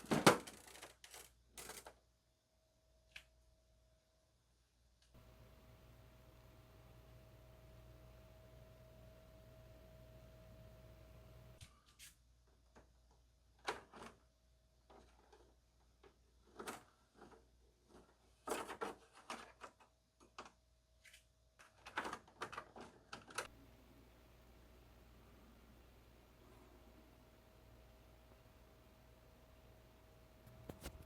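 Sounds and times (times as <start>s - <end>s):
faint steady hum: 0.0s - 12.0s, 23.4s - 31.0s.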